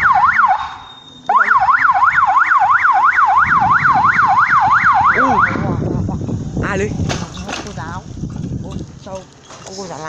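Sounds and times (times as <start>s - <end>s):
electronic siren wailing: 0.0s - 5.9s.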